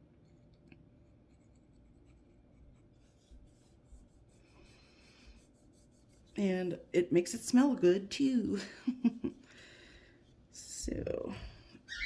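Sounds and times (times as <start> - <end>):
soft rubbing on knife handle: 0.2 - 6.6.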